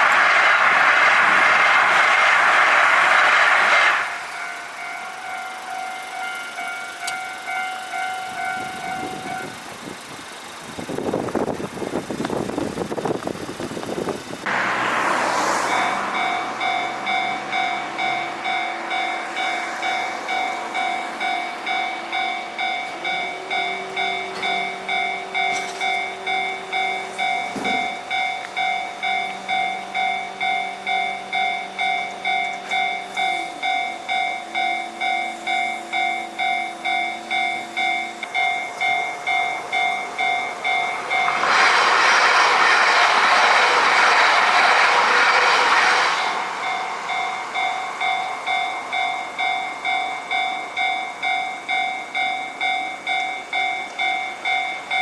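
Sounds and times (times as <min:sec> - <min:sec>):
passing train rushing: 0:00.0 - 0:55.0
level crossing bell ringing: 0:04.7 - 0:09.6, 0:16.2 - 0:41.3, 0:46.6 - 0:55.0.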